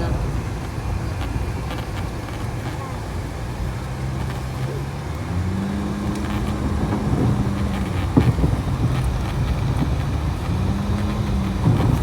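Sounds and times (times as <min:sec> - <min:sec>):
car engine humming: 0:00.0 - 0:12.0
road rumble: 0:00.0 - 0:12.0.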